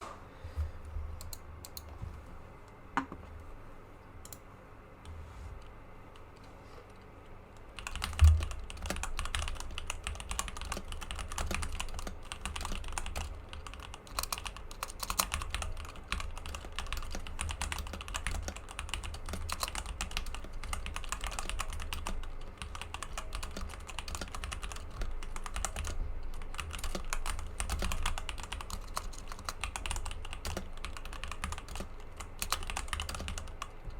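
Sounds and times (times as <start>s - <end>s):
mechanical keyboard typing: 7.6s - 33.9s.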